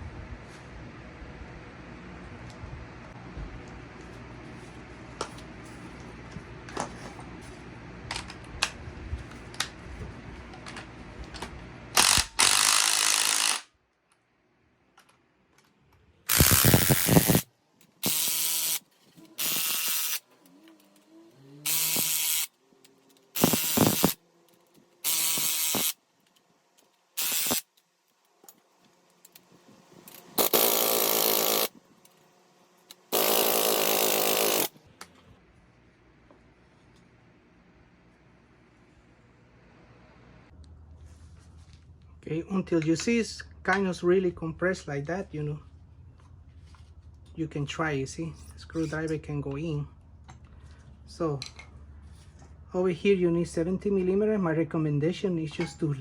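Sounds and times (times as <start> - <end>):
power tool bursts: 12.0 - 13.7, 16.3 - 20.3, 21.4 - 22.6, 23.3 - 24.2, 25.0 - 26.0, 27.2 - 27.7, 30.1 - 31.8, 32.9 - 34.8.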